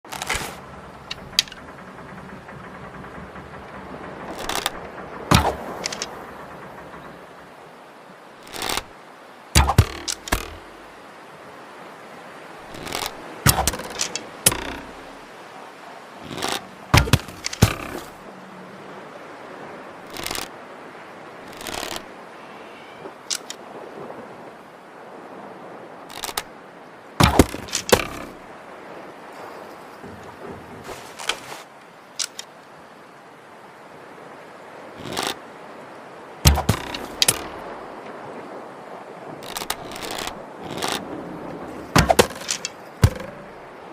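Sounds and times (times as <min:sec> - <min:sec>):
rattling clicks: 0:00.1 - 0:07.2, 0:08.4 - 0:08.9, 0:09.6 - 0:10.9, 0:12.7 - 0:15.2, 0:16.2 - 0:18.2, 0:20.1 - 0:20.5, 0:23.3 - 0:23.6, 0:26.1 - 0:26.4, 0:27.2 - 0:28.4, 0:32.2 - 0:32.5, 0:36.5 - 0:37.7, 0:39.4 - 0:41.1, 0:42.0 - 0:43.6
sharp loud cracks: 0:00.1 - 0:07.3, 0:09.6 - 0:10.9, 0:12.7 - 0:15.3, 0:16.3 - 0:18.2, 0:36.5 - 0:37.8
bow snapping: 0:04.3 - 0:06.2, 0:08.4 - 0:08.9, 0:09.6 - 0:10.9, 0:12.7 - 0:15.2, 0:16.2 - 0:18.2, 0:20.1 - 0:20.5, 0:27.2 - 0:28.4, 0:35.0 - 0:35.4, 0:36.5 - 0:37.8, 0:39.4 - 0:41.1, 0:42.0 - 0:43.6
arrow swish: 0:05.3 - 0:06.2, 0:09.6 - 0:10.8, 0:12.8 - 0:15.1, 0:16.4 - 0:18.2, 0:27.2 - 0:28.3, 0:36.5 - 0:37.6, 0:42.0 - 0:43.5.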